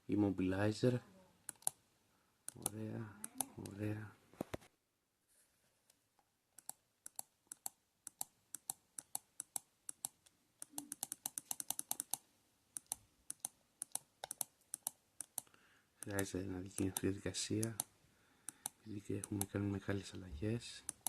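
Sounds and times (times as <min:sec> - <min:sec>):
computer keyboard key clicks: 0:06.6 - 0:12.2.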